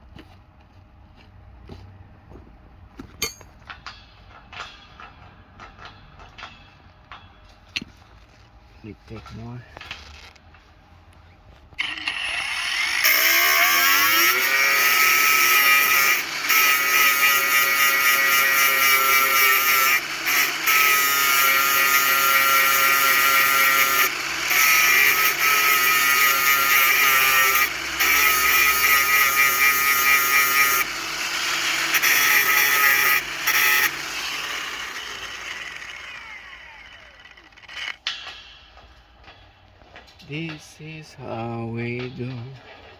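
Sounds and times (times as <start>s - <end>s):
angle grinder whining: 11.8s - 38.2s
grinder grinding steel: 11.8s - 38.2s.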